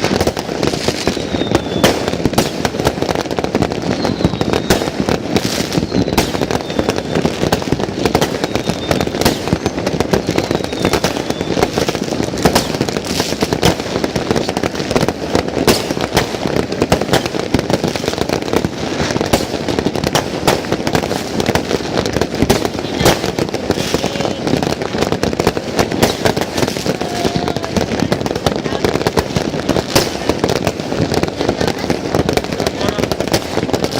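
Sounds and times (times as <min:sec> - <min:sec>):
fireworks bangs and crackles: 0:00.0 - 0:33.9.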